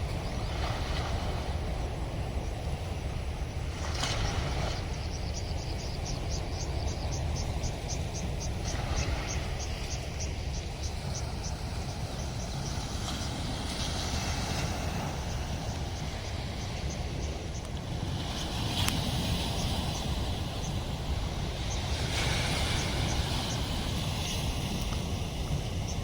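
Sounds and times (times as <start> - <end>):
insect chirping: 0.0 - 26.0
wind: 0.0 - 26.0.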